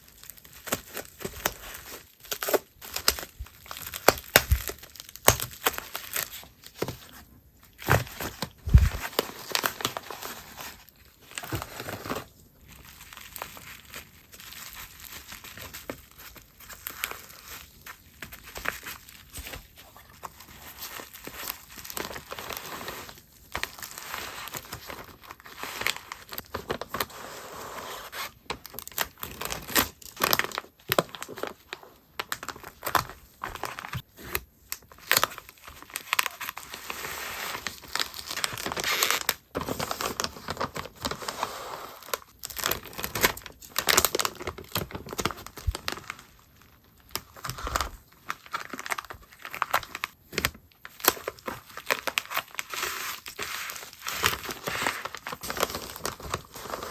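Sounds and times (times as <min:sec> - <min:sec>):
plastic packaging crinkling: 0:00.0 - 0:56.9
plastic tearing: 0:00.5 - 0:27.1, 0:47.0 - 0:56.9.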